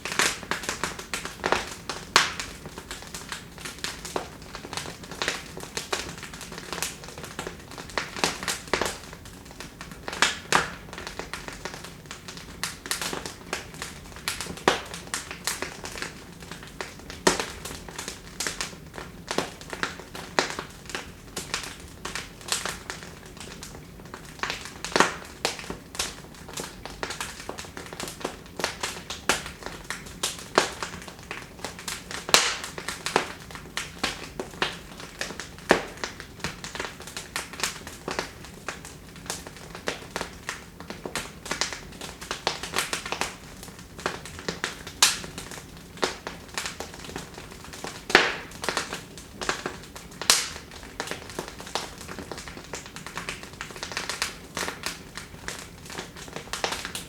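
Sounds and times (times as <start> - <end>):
fireplace fire crackling: 0.0 - 57.0.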